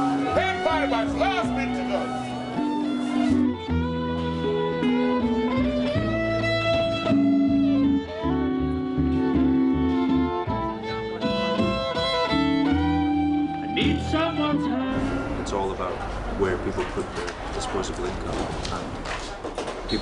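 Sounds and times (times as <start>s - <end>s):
violin melody with sliding notes: 0.0s - 15.6s
guitar: 0.0s - 17.5s.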